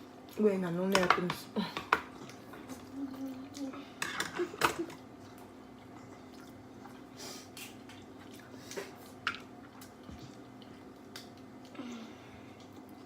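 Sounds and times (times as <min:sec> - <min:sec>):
faint steady hum: 0:00.0 - 0:13.0
wet eating sounds: 0:01.6 - 0:13.0.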